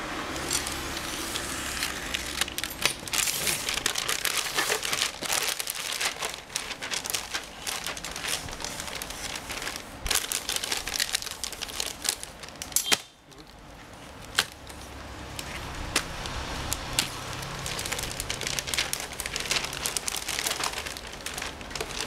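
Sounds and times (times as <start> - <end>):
plastic packaging crinkling: 0.3 - 22.0.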